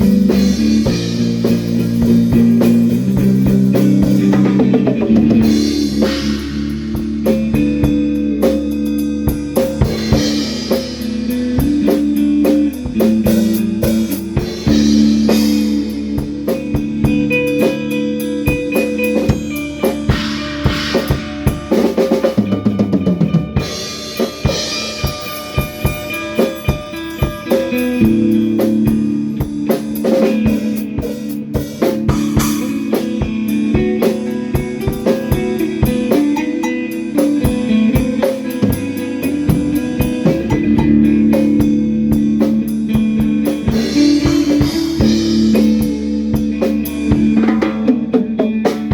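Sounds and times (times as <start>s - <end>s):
drum kit beat: 0.0s - 48.9s
guitar and bass chords: 0.0s - 48.9s
cymbal crashes: 5.4s - 8.0s, 19.4s - 22.6s.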